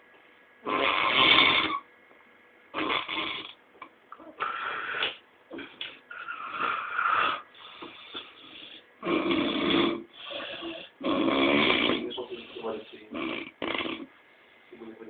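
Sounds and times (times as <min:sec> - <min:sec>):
snoring: 0:00.6 - 0:01.8, 0:02.8 - 0:03.6, 0:04.3 - 0:14.1
quiet breathing: 0:12.0 - 0:13.2.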